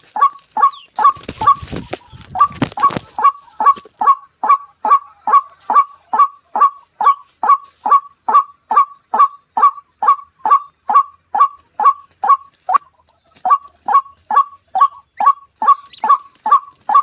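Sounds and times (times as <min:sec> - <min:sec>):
rustle: 0:00.0 - 0:04.1, 0:07.1 - 0:08.0, 0:15.5 - 0:17.0
waterhen honking call: 0:00.2 - 0:01.7.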